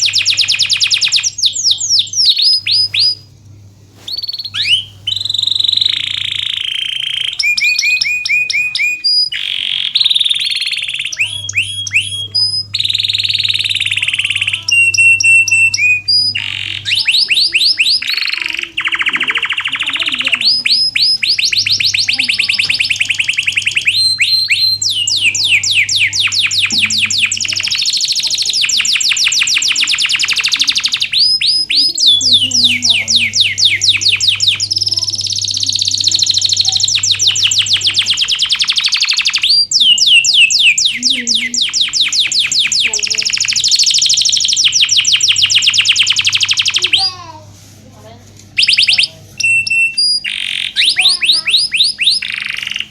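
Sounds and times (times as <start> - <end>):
canary singing trills: 0.0 - 52.9.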